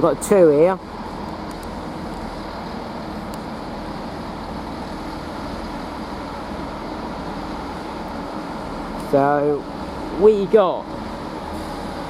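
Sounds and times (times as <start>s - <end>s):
diesel train engine hum: 0.0s - 12.0s.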